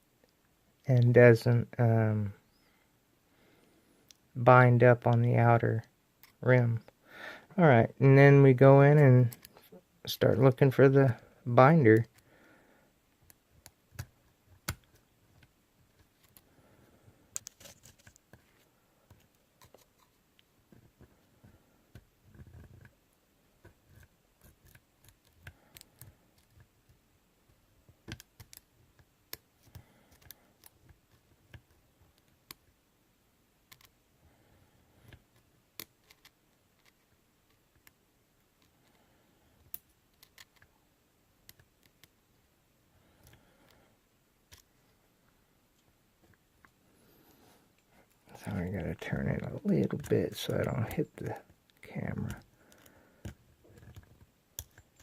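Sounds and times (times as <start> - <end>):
lock pick clicking and scraping: 19.1 - 20.2, 35.0 - 38.0, 39.6 - 40.7, 51.7 - 55.0.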